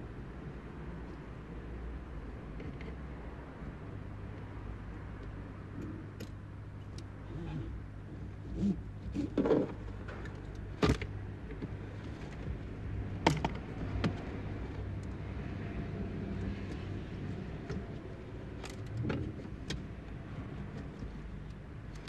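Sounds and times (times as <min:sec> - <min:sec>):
clicks and knocks on dashboard: 0:13.2 - 0:14.4.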